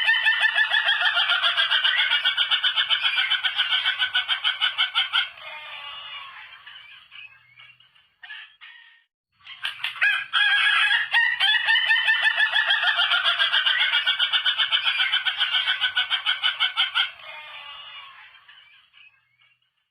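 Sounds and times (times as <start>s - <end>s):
rooster crowing: 8.2s - 9.1s, 9.9s - 13.5s.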